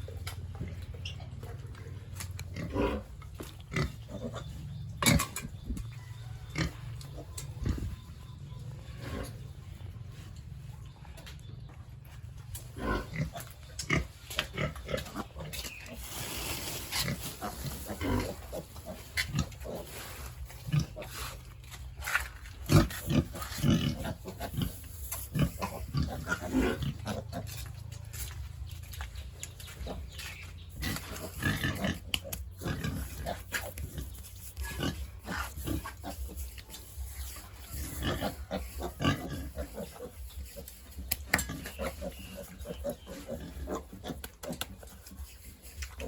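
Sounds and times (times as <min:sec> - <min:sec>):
pigs grunting: 0:00.0 - 0:05.6, 0:12.7 - 0:16.2, 0:16.9 - 0:21.6, 0:22.4 - 0:28.2, 0:29.6 - 0:46.0.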